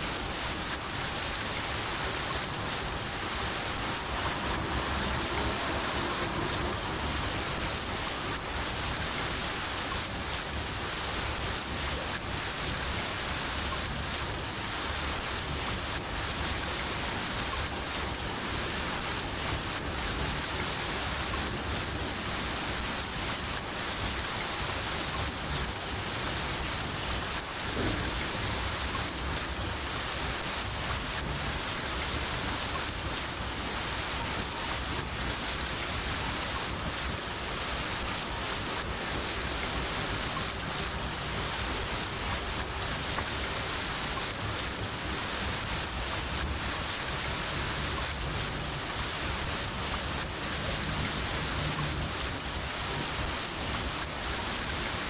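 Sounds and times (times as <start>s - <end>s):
cricket chirping: 0.0s - 55.0s
rain falling: 0.0s - 55.0s
thunder rumbling: 3.1s - 8.8s, 27.7s - 29.4s.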